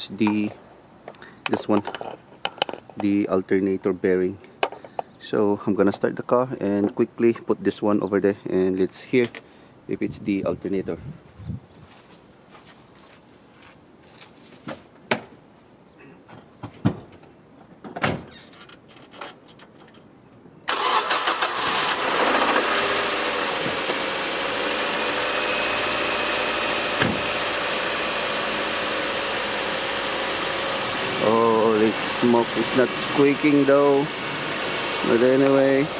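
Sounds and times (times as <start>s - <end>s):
car engine starting and idling: 20.7s - 35.9s.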